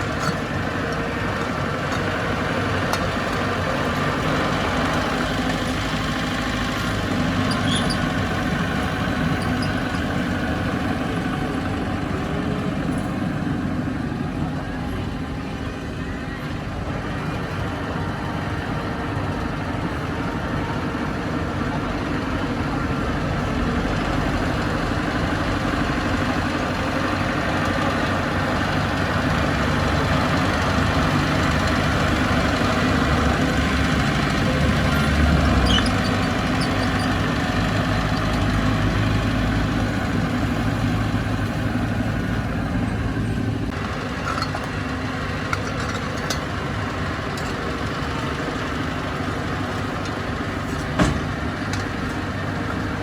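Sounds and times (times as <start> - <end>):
bulldozer diesel engine rumbling: 0.0 - 53.0.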